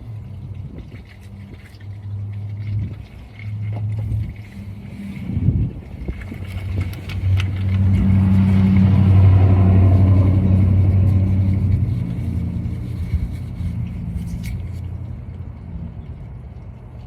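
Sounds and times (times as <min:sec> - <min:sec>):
vehicle driving past: 0:07.1 - 0:16.9.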